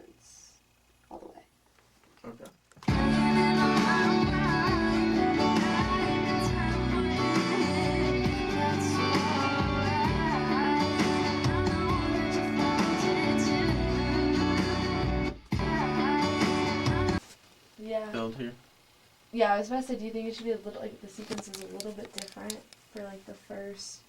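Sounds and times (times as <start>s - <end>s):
person singing lead vocal: 2.9s - 17.2s.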